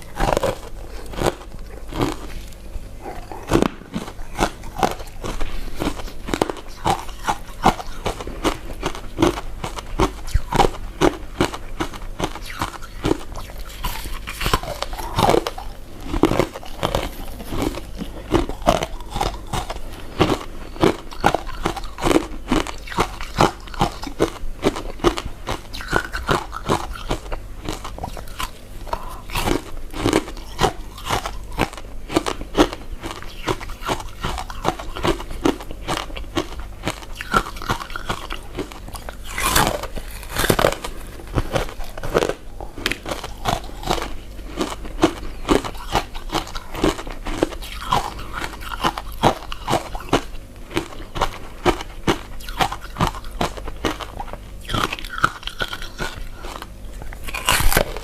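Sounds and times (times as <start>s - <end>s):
close chewing with mouth clicks: 0.0s - 58.0s.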